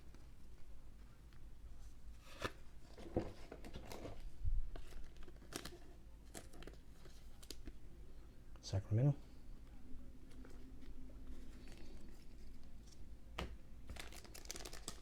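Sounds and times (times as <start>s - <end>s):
cards clicking and rustling: 12.9s - 15.0s.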